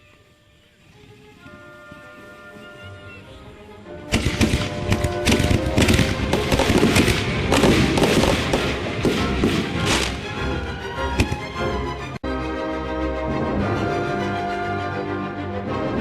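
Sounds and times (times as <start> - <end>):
background music: 0.0 - 16.0
fireworks bangs and crackles: 4.1 - 11.6.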